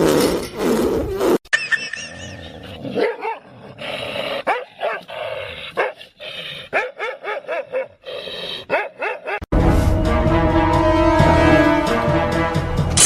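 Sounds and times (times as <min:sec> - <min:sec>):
dog barking and whining: 0:02.7 - 0:03.5, 0:04.4 - 0:06.0, 0:06.7 - 0:09.5.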